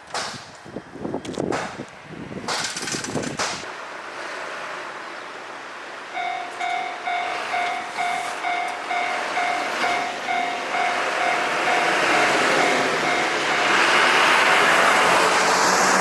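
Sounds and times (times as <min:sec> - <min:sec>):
railroad crossing bell ringing: 0:06.1 - 0:14.3.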